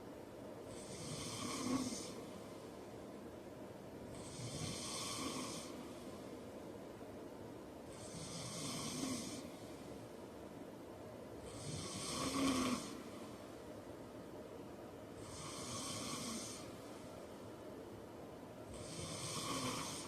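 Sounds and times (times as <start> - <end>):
man snoring: 0.7 - 2.2, 4.1 - 5.8, 7.9 - 9.5, 11.5 - 13.0, 15.2 - 16.7, 18.7 - 20.0.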